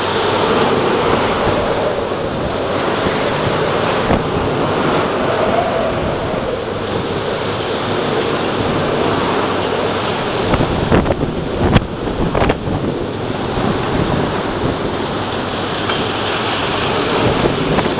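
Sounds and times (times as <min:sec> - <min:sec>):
wind and rain: 0:00.0 - 0:17.9
wind buffeting microphone: 0:00.0 - 0:17.9.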